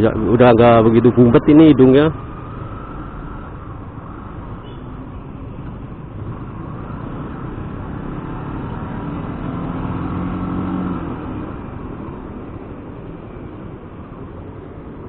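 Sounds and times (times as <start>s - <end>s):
road traffic noise: 0.0s - 15.0s
vehicle engine passing: 0.0s - 15.0s.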